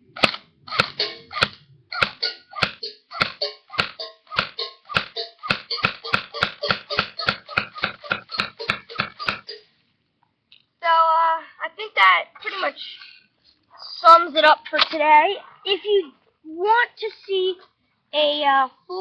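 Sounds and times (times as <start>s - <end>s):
airsoft gun clicks: 0.2s - 1.6s.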